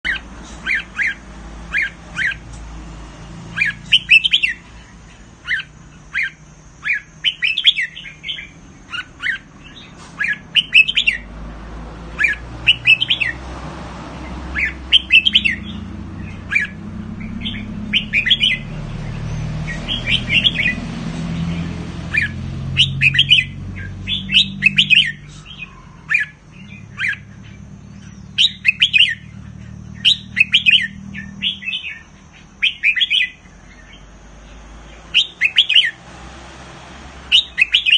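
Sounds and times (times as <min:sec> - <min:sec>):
bird singing chirpy whistles: 0:00.0 - 0:02.5, 0:03.5 - 0:11.3, 0:12.2 - 0:13.4, 0:14.5 - 0:36.0, 0:37.3 - 0:37.9
low hum: 0:13.7 - 0:32.6.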